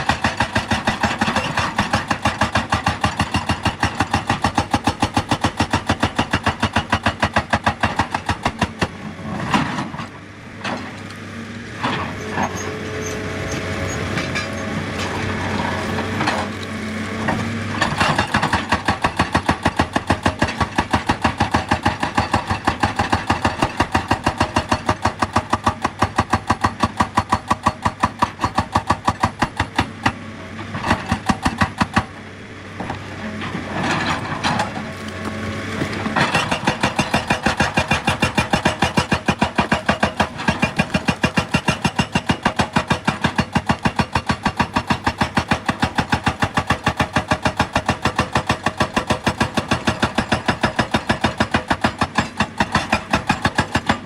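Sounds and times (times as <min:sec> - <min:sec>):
hydraulic rock breaker hammering: 0:00.0 - 0:09.0, 0:17.2 - 0:32.2, 0:35.8 - 0:54.0.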